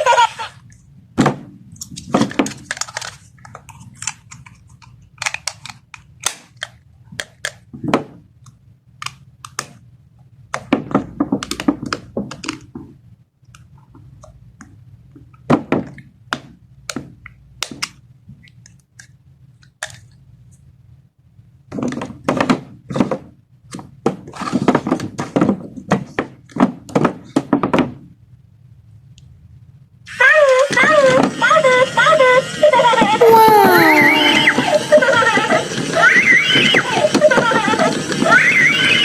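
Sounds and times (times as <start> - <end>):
plastic toy parts clicking and tapping: 1.8 - 7.6.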